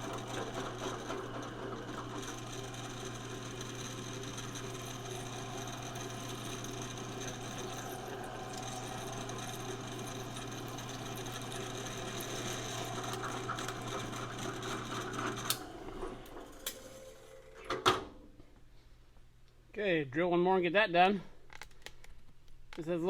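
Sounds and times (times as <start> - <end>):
drill press motor hum: 0.0 - 18.3.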